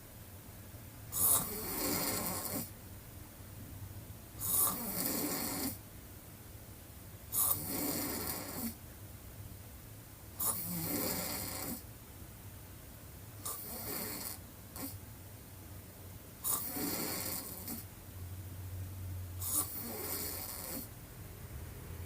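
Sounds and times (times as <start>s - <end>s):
woman snoring: 1.1s - 2.7s, 4.4s - 5.8s, 7.3s - 8.8s, 10.4s - 11.9s, 13.4s - 15.0s, 16.4s - 17.9s, 19.4s - 20.9s
quiet breaths: 7.2s - 8.9s, 10.2s - 12.0s, 13.4s - 21.0s.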